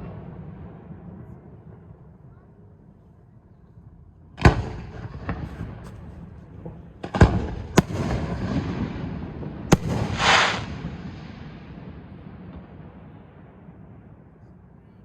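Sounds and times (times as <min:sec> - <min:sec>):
echoing rumble: 0:03.7 - 0:14.4
fireworks bursting: 0:04.4 - 0:13.2.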